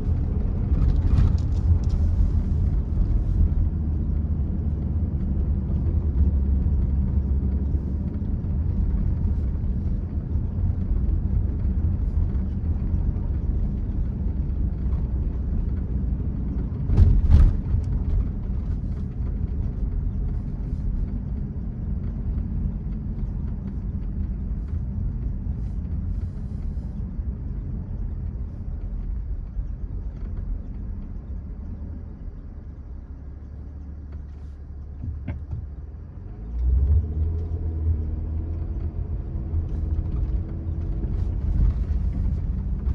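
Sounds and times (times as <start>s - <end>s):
car rumbling on snowy road: 0.0s - 42.9s
thump: 16.9s - 17.7s.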